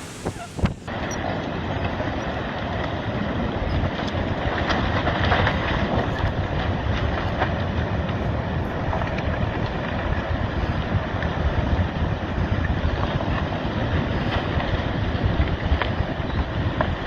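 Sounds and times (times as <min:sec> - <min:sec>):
loud rushing noise: 0:00.0 - 0:00.9.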